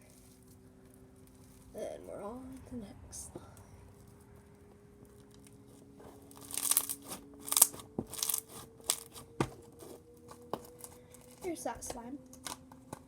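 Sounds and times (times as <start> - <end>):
slime crinkling and crunching: 6.1 - 11.6.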